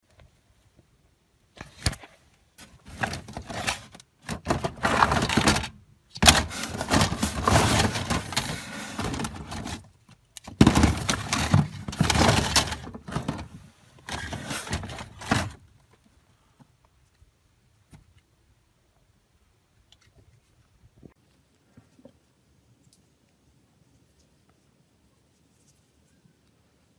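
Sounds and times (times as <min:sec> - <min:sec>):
hard objects knocking and scraping: 0:02.6 - 0:09.8, 0:10.5 - 0:15.6.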